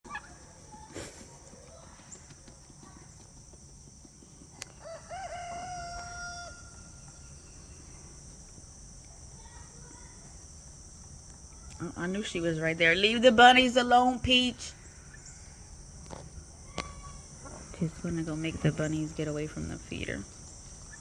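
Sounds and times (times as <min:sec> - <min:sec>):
faint insect trill: 0:00.0 - 0:21.0
large fowl calling: 0:00.1 - 0:00.5.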